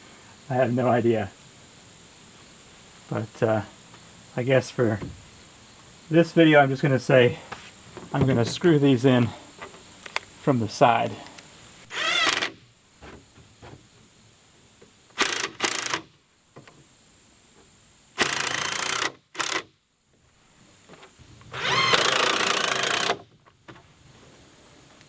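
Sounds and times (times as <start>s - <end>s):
impact driver driving screws: 11.9s - 12.6s, 21.6s - 23.2s.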